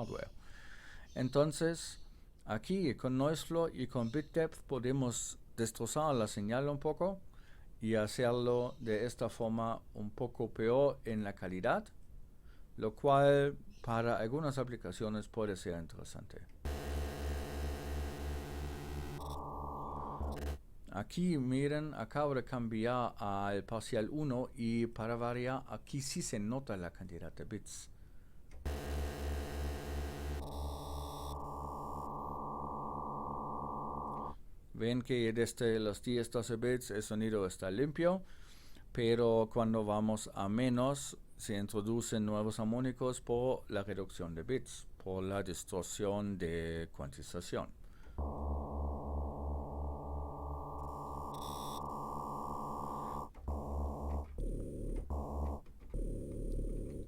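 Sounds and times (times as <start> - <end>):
pulsing synthesizer bass note: 16.7 - 20.6, 28.7 - 34.3, 48.2 - 57.0.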